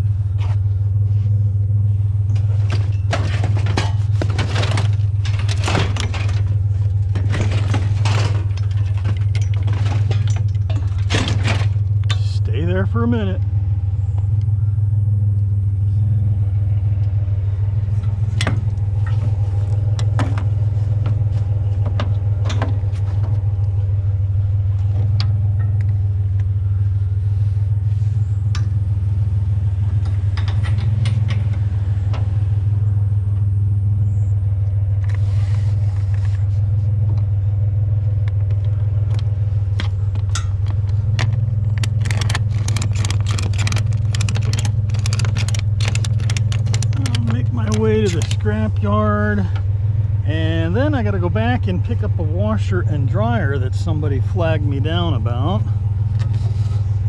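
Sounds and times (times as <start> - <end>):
truck engine running: 0.0 - 57.0
clicks and rattles: 2.3 - 12.3, 30.0 - 32.3, 38.2 - 49.6.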